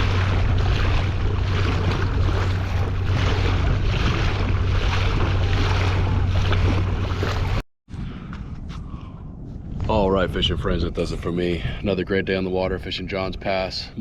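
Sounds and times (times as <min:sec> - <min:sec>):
water splashing along kayak hull: 0:00.0 - 0:07.6
wind buffeting microphone: 0:00.0 - 0:14.0.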